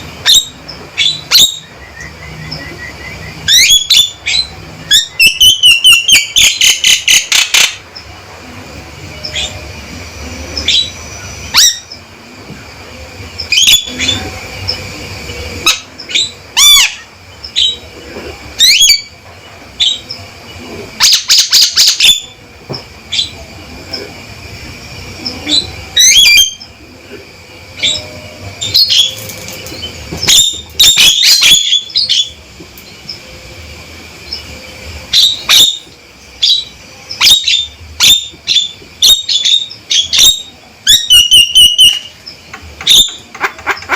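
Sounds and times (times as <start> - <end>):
myna harsh calls and whistles: 0.2 - 7.8, 13.4 - 17.8, 34.3 - 43.3.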